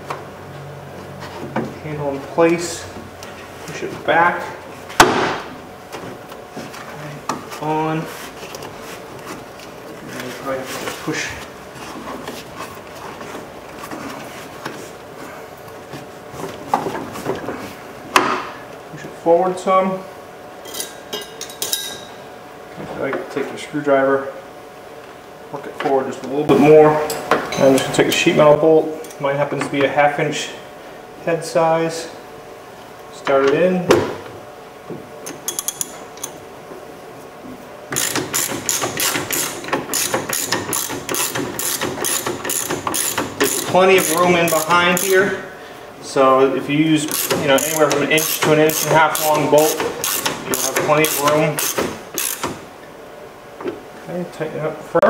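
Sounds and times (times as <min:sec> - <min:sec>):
sharp knocks: 0:05.0 - 0:05.5
ratchet wrench clicking: 0:38.0 - 0:45.1, 0:47.1 - 0:52.5.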